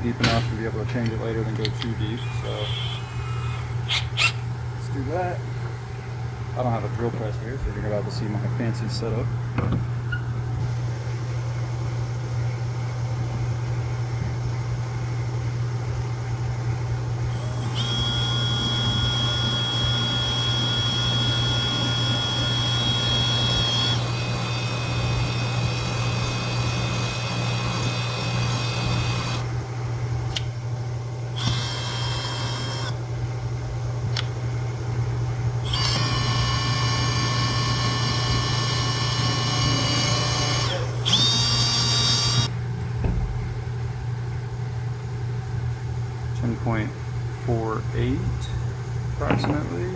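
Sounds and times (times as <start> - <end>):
electric drill whining: 2.0 - 4.4, 17.3 - 29.5, 31.4 - 33.0, 35.6 - 42.5.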